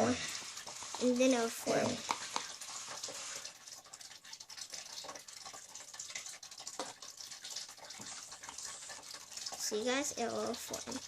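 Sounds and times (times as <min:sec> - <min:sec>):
slime squishing in a bowl: 0:00.0 - 0:03.4.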